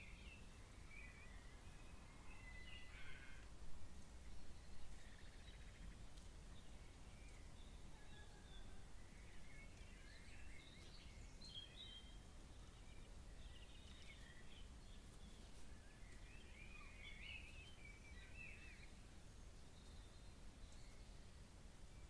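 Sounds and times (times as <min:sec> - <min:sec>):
faint bird chirping and warbling: 0:07.3 - 0:19.0.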